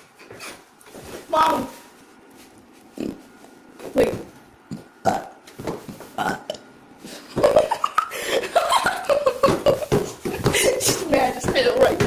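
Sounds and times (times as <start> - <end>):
person burping loudly: 4.7 - 5.4, 6.2 - 6.7, 7.3 - 8.1.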